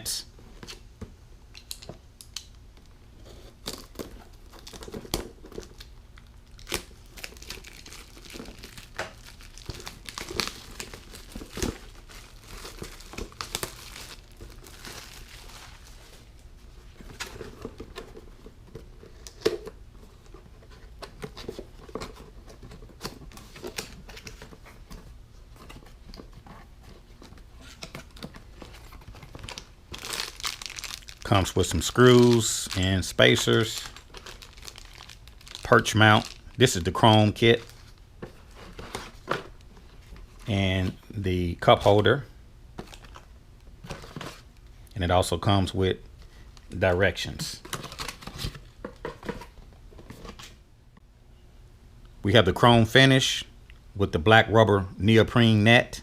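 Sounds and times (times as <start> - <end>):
packaging crinkling and tearing: 3.5 - 16.4, 27.2 - 39.7, 47.6 - 49.5.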